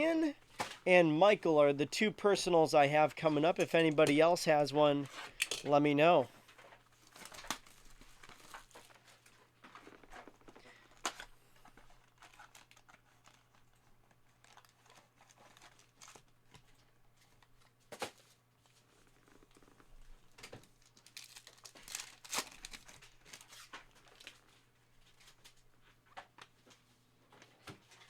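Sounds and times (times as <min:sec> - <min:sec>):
wrappers crinkling and tearing: 0:06.5 - 0:25.6.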